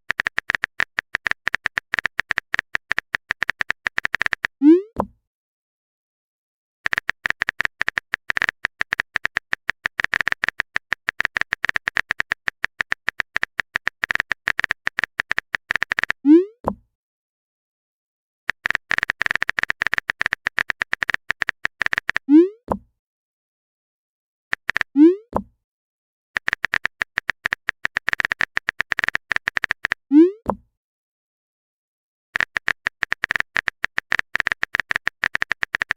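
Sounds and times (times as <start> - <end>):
rapid typing clicks: 0.1 - 4.6, 6.8 - 16.2, 18.5 - 22.2, 24.5 - 24.9, 26.4 - 30.0, 32.4 - 35.9.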